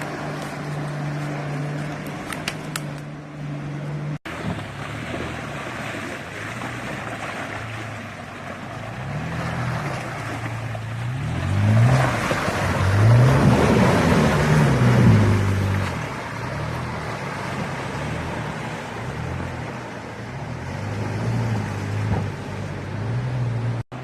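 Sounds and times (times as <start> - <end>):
off-road vehicle engine revving: 0.0 - 24.0.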